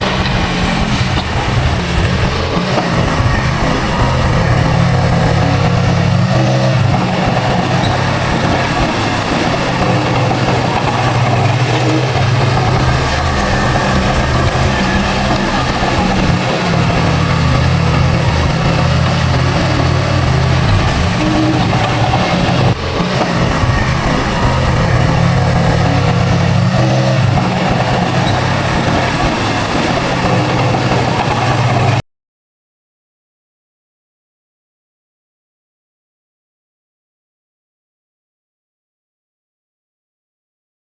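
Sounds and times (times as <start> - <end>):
diesel engine running: 0.0 - 32.0.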